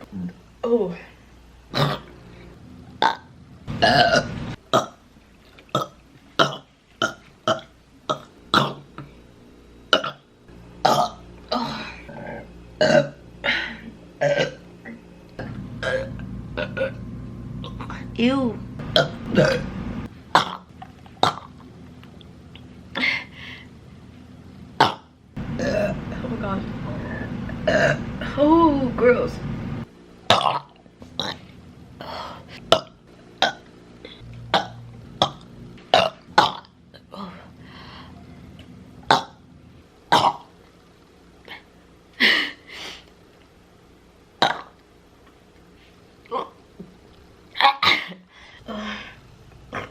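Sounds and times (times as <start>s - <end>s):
woman burping: 1.7s - 2.1s, 3.0s - 5.0s, 5.7s - 9.0s, 9.9s - 17.0s, 18.9s - 19.7s, 20.3s - 21.5s, 24.8s - 26.0s, 27.6s - 28.0s, 32.0s - 33.6s, 34.5s - 37.4s, 44.4s - 44.8s, 46.3s - 46.6s
woman making sharp throat sounds: 1.7s - 2.1s, 44.4s - 44.8s
woman clearing her throat: 3.8s - 4.9s, 12.8s - 14.6s, 19.0s - 19.6s, 27.7s - 28.0s.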